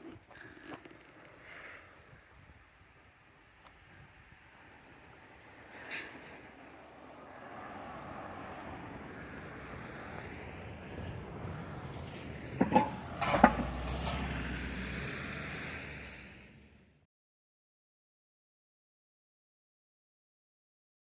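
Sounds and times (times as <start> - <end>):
passing vehicle road noise: 4.1 - 17.0.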